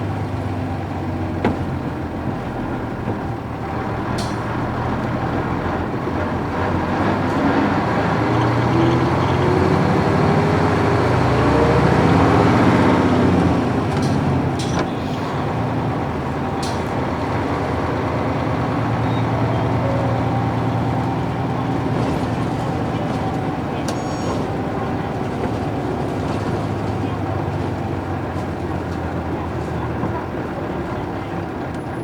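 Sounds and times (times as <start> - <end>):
bus diesel engine: 0.0 - 32.0.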